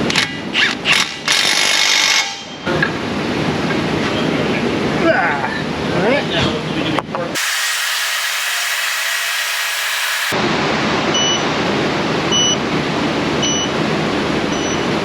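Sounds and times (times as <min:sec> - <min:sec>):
steady hiss: 0:07.4 - 0:10.3.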